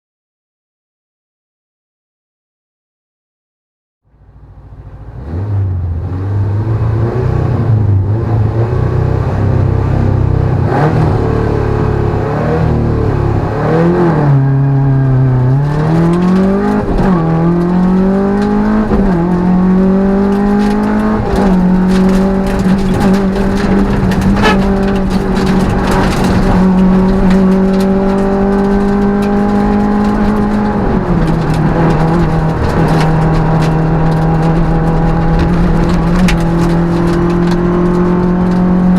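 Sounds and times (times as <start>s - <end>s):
car engine revving: 4.4s - 38.9s
clicks and rattles: 15.5s - 38.9s.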